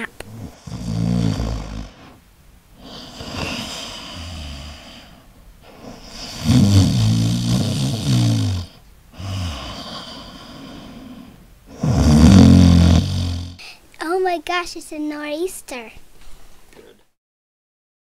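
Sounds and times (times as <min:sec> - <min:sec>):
dog snoring: 0:00.3 - 0:02.2, 0:02.8 - 0:13.6.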